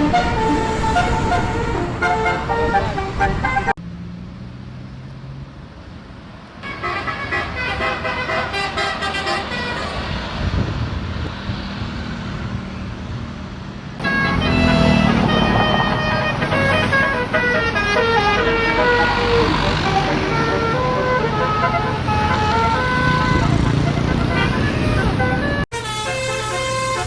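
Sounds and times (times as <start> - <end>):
multi-tone bus horns playing tunes: 0.0 - 3.8, 6.6 - 10.7, 14.0 - 27.0
bus engines humming: 0.0 - 27.0.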